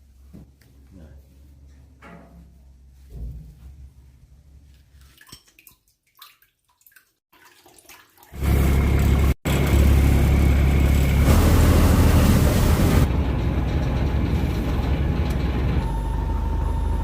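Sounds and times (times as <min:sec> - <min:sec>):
low engine hum: 0:08.4 - 0:17.0.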